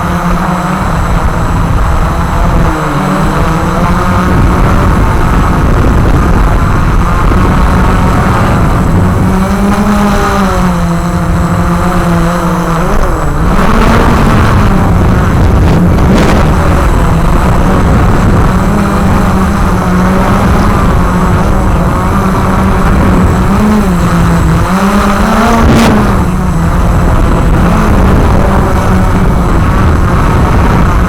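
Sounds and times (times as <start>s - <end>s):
quadcopter propellers buzzing: 0.0s - 31.0s
low rumble: 12.9s - 31.0s.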